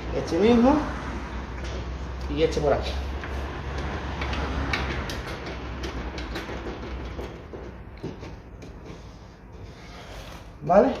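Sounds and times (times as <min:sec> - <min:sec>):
metal parts rattling and clicking: 0:03.8 - 0:09.0.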